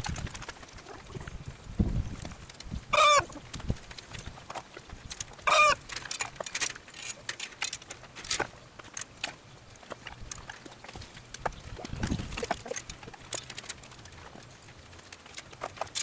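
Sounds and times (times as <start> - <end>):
faint clicks and rustling: 0.0 - 16.0
chicken squawks: 2.9 - 3.4, 5.5 - 5.8.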